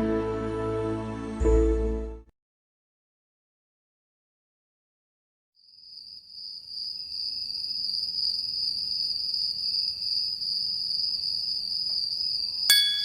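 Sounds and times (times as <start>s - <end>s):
crickets chirping: 5.6s - 13.0s.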